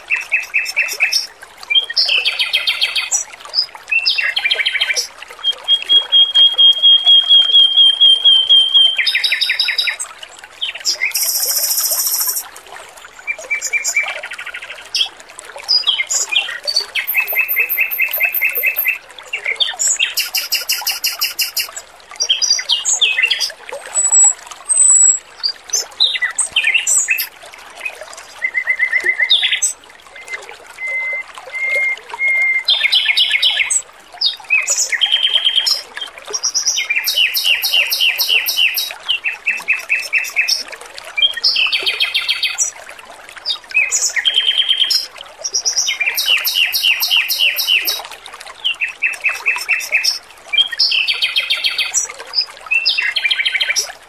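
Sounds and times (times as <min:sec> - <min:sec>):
trickling water: 0:00.0 - 0:54.0
bird singing trills: 0:04.1 - 0:10.0, 0:10.9 - 0:12.4, 0:17.0 - 0:19.0, 0:20.0 - 0:21.7, 0:23.3 - 0:25.2, 0:36.4 - 0:38.9, 0:45.9 - 0:48.0, 0:49.1 - 0:50.2.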